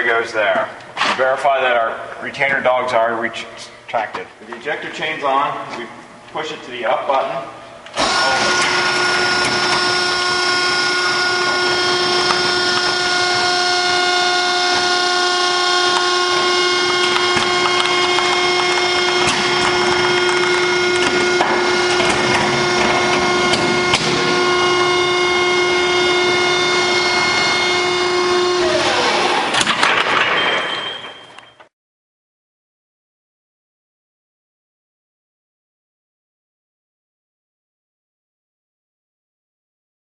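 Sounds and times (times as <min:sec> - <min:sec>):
hydraulic power unit whining: 0:00.0 - 0:31.7.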